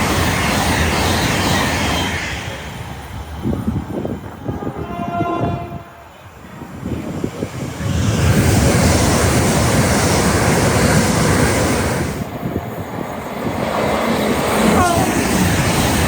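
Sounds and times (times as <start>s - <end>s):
train passing at speed: 0.0s - 16.0s
train horn: 4.4s - 6.1s, 14.8s - 15.2s.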